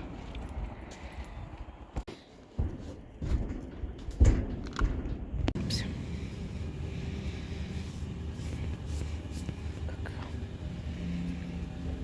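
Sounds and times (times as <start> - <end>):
vehicle running rumble: 5.4 - 12.0.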